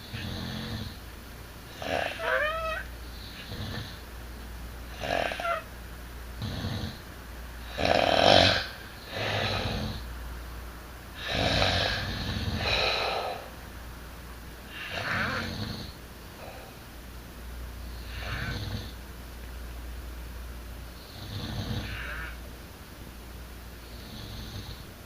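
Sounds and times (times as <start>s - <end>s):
person snoring: 0.0s - 1.0s, 1.8s - 2.6s, 4.9s - 5.6s, 7.6s - 10.0s, 11.2s - 13.5s, 14.7s - 16.7s, 17.9s - 19.0s, 21.1s - 22.4s.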